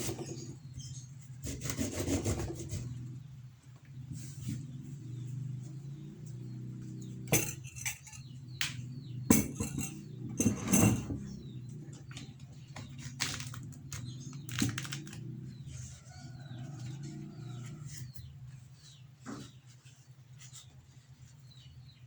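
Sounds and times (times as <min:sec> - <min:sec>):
dishes and utensils clinking: 0:07.2 - 0:08.4, 0:09.3 - 0:11.4.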